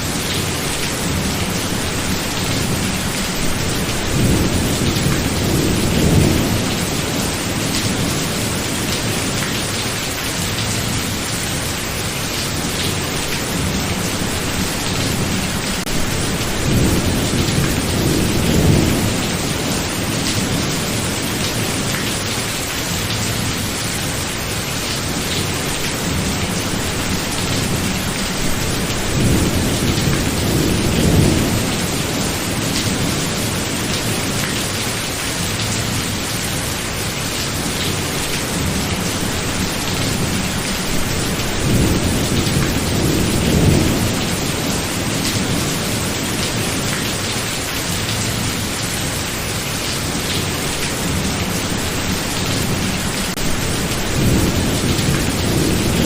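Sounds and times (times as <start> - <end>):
heavy rain: 0.0 - 56.0
rolling thunder: 13.7 - 21.7, 26.0 - 34.3.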